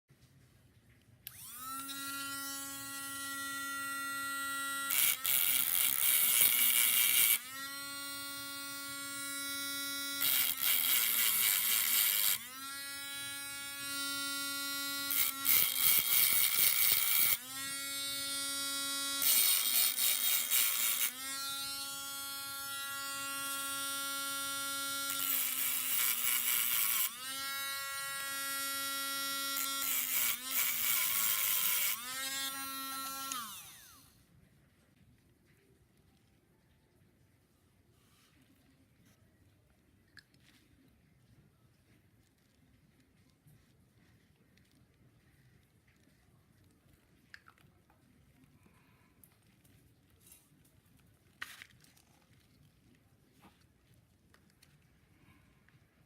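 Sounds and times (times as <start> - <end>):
electric motor tool whining: 1.3 - 34.1.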